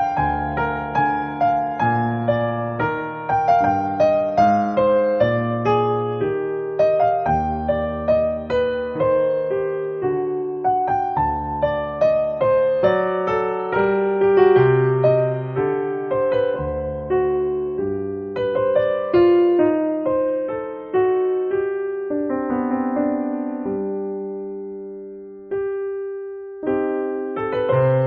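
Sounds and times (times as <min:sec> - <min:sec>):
slow solo piano melody: 0:00.0 - 0:28.0.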